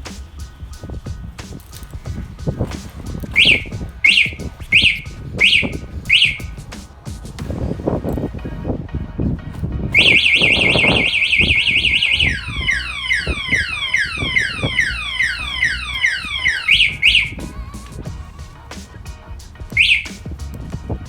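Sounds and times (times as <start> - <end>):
motorcycle alarm siren: 3.4 - 6.4, 10.0 - 17.5, 19.8 - 20.2.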